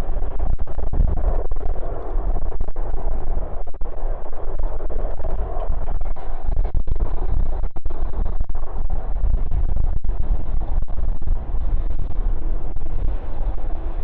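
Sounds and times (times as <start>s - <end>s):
wind buffeting microphone: 0.0s - 14.0s.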